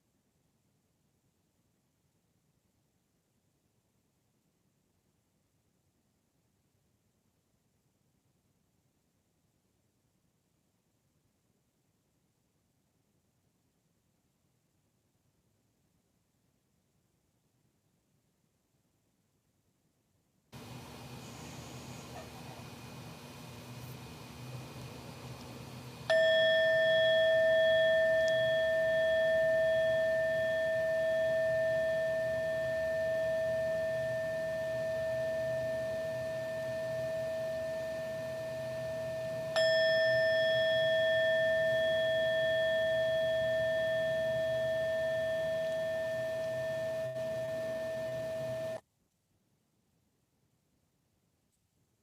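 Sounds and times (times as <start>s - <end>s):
meditation bell ringing: 26.1s - 48.8s.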